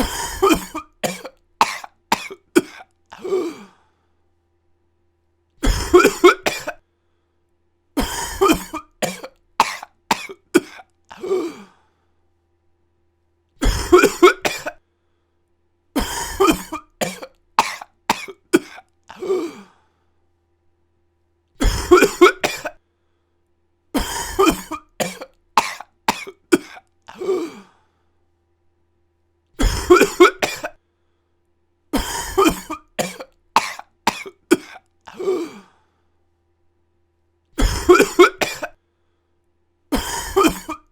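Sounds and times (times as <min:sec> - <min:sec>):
person coughing: 0:00.0 - 0:03.8, 0:05.6 - 0:06.8, 0:08.0 - 0:11.8, 0:13.6 - 0:14.8, 0:16.0 - 0:19.8, 0:21.6 - 0:22.8, 0:24.0 - 0:27.8, 0:29.6 - 0:30.8, 0:32.0 - 0:35.8, 0:37.6 - 0:38.8, 0:39.9 - 0:40.9.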